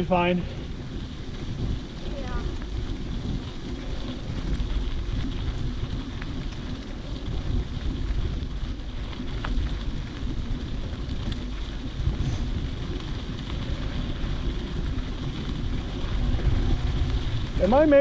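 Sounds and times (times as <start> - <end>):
wind buffeting the microphone: 0.0 - 18.0.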